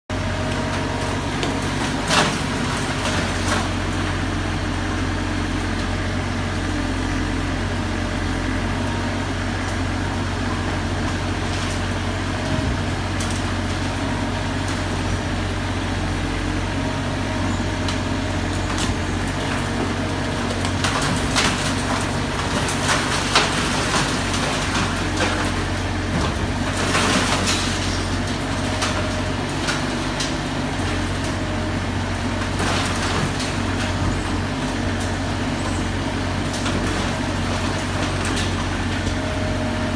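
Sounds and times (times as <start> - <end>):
diesel engine running: 0.1 - 39.9
crusher crunching concrete: 17.2 - 39.9
concrete cracking: 17.6 - 31.4.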